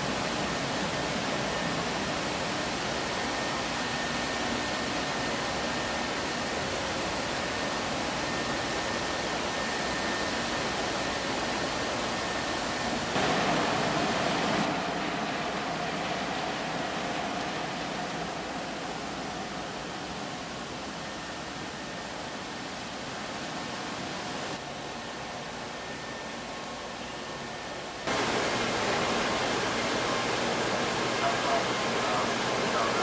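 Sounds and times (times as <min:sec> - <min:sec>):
steady hum: 0:00.0 - 0:26.6, 0:27.6 - 0:33.0
churned water: 0:28.1 - 0:33.0
ferry engines rushing: 0:28.1 - 0:33.0.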